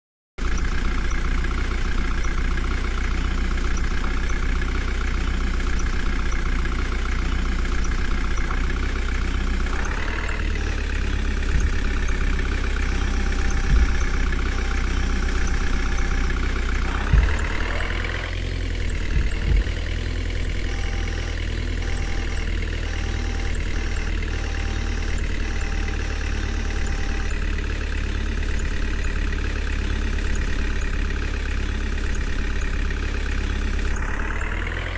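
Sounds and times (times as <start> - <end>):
diesel engine running: 0.4 - 34.9
short thuds: 11.4 - 12.3, 13.4 - 14.4, 16.9 - 18.2, 18.9 - 20.0.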